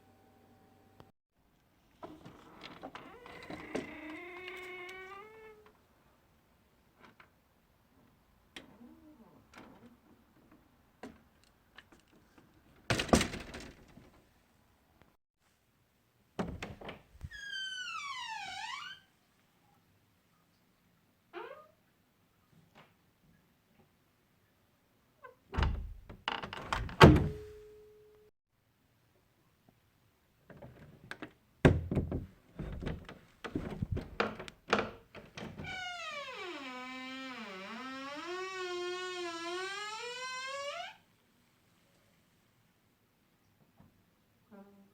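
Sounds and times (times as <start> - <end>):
door hinge creaking: 2.3 - 5.6, 16.4 - 19.0, 25.6 - 27.4, 32.0 - 41.0
door shutting with heavy clunk: 25.6 - 27.5.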